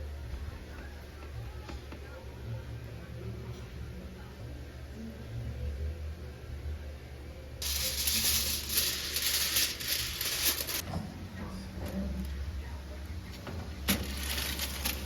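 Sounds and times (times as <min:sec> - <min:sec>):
loud steady hiss: 0:07.6 - 0:10.8.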